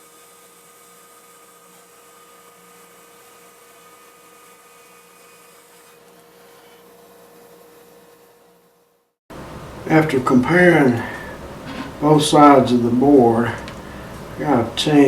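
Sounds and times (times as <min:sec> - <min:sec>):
even hiss: 0:09.3 - 0:15.0
faint steady hum: 0:09.3 - 0:15.0.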